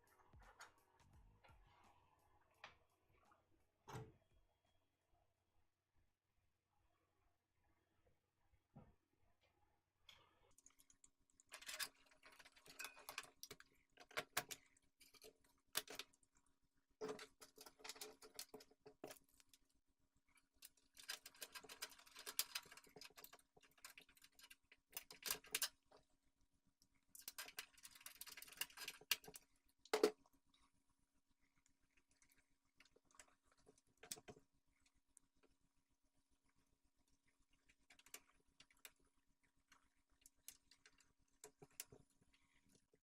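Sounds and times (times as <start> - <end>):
clicks taps and rustling: 27.1 - 30.4, 32.0 - 35.0, 39.7 - 43.0.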